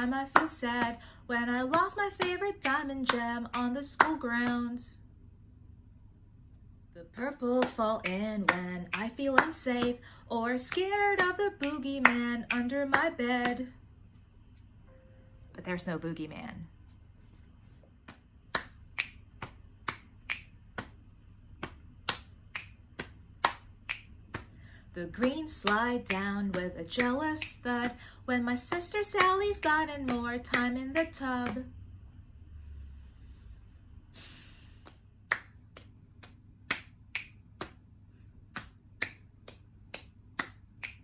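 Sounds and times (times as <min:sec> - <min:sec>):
finger snaps: 0:18.0 - 0:21.0, 0:21.6 - 0:28.0, 0:34.7 - 0:37.8, 0:38.5 - 0:41.0.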